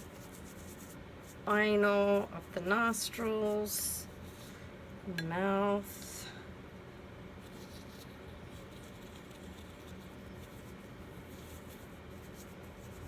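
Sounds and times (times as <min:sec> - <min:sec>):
brush strokes: 0:00.0 - 0:04.6, 0:07.4 - 0:13.0
low room hum: 0:00.0 - 0:13.0.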